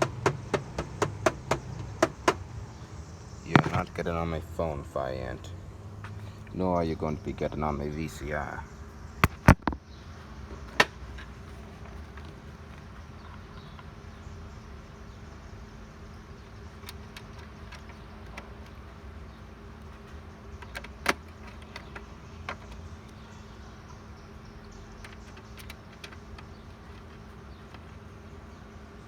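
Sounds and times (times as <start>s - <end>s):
low electrical hum: 0.0s - 29.0s
sharp clicks: 9.2s - 9.8s.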